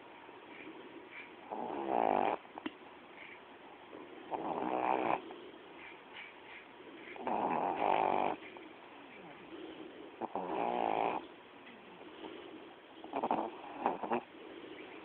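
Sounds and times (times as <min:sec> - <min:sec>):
dog breathing: 0:00.2 - 0:15.0
dog snoring: 0:00.6 - 0:02.7, 0:03.9 - 0:05.6, 0:07.0 - 0:11.3, 0:12.0 - 0:15.0.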